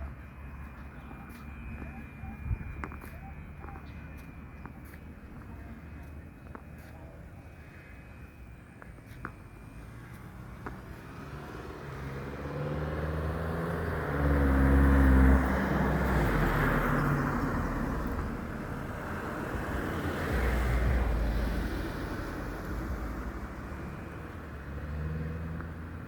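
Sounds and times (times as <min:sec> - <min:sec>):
vehicle passing by: 0:09.1 - 0:26.0.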